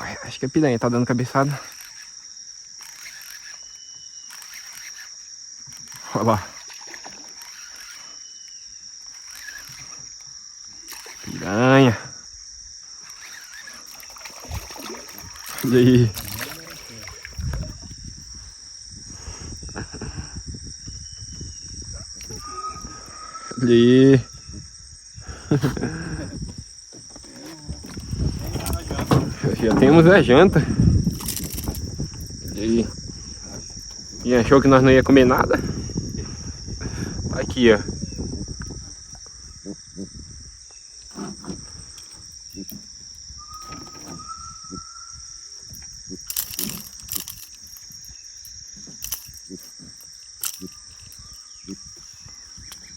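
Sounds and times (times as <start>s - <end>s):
insects droning: 0.0s - 52.9s
low knocks and rustles: 26.3s - 30.4s.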